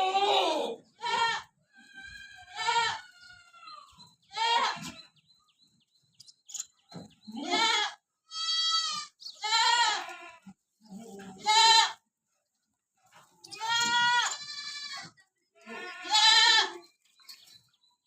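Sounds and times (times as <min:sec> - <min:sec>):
goats bleating: 0:00.0 - 0:05.2, 0:07.3 - 0:12.0, 0:13.4 - 0:16.9.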